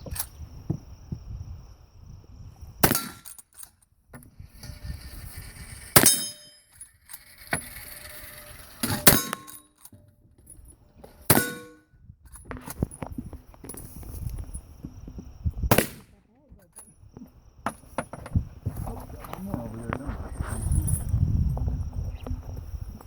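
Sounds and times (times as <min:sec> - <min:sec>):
rifle shots: 0:02.8 - 0:03.3, 0:11.3 - 0:11.8, 0:15.7 - 0:16.1
ring of hit steel target: 0:02.8 - 0:03.3, 0:06.0 - 0:06.7, 0:08.8 - 0:09.7, 0:11.3 - 0:11.9.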